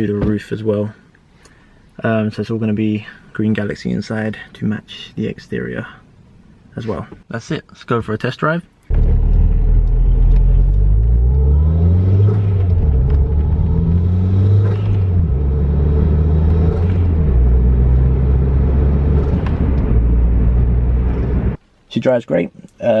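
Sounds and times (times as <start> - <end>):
car engine pulling through gears: 8.9 - 21.6.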